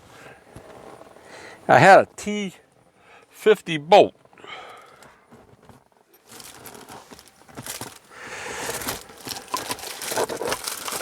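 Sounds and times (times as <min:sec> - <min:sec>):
hands rummaging through wrappers: 0:06.2 - 0:11.0.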